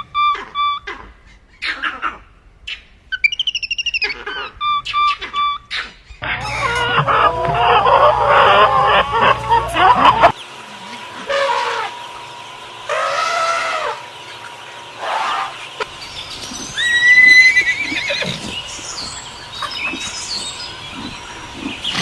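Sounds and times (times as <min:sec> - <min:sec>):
horse neighing: 0:16.8 - 0:18.6.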